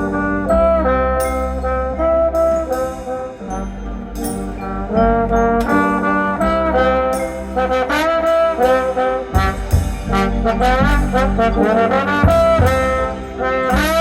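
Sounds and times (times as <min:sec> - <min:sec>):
brass ensemble playing chords: 0:00.0 - 0:14.0
low drum hits: 0:09.4 - 0:13.2.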